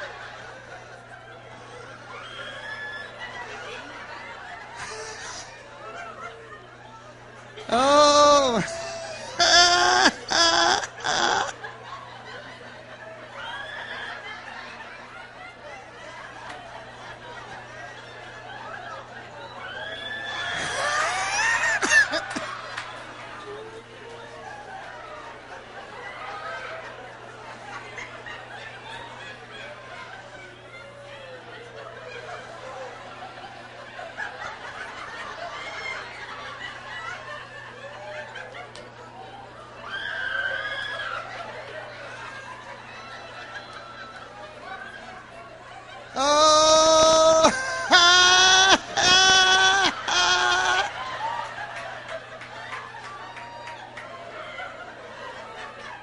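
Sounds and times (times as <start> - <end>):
congregation laughing: 0.0 - 56.0
low electrical hum: 0.0 - 56.0
woman laughing loudly: 4.7 - 5.5, 7.7 - 11.7, 20.4 - 22.6, 46.2 - 51.0.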